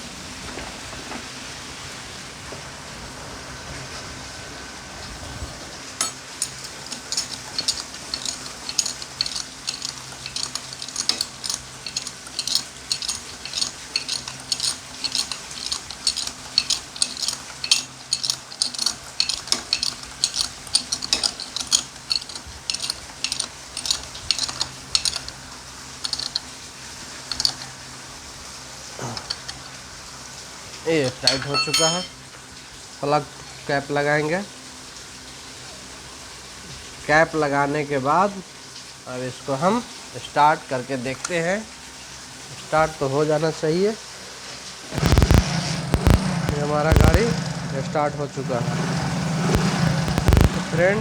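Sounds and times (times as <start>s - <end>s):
hand tool ratcheting clicks: 6.0s - 25.4s, 26.0s - 26.5s, 27.3s - 27.7s, 29.0s - 29.7s, 31.1s - 32.1s, 45.0s - 47.4s, 49.4s - 50.8s.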